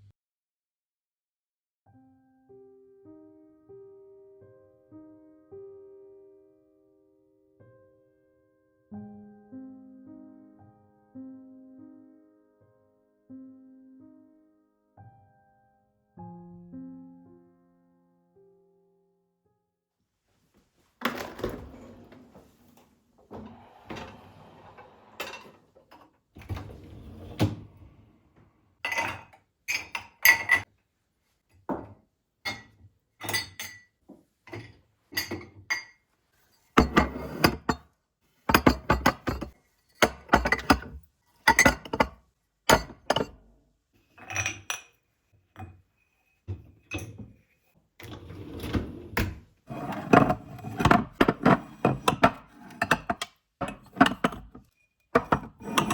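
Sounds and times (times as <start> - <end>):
dishes and cutlery clinking: 28.9 - 30.7, 31.8 - 33.9, 36.8 - 37.8, 38.5 - 43.4, 44.2 - 45.0, 49.7 - 55.9.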